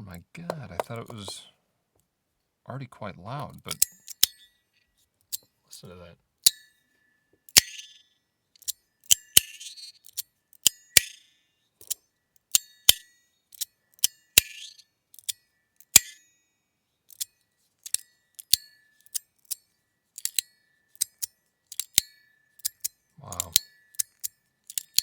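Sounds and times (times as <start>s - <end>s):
metallic clacks of slider: 8.6s - 11.2s, 11.8s - 16.2s, 17.1s - 19.6s, 20.2s - 25.0s.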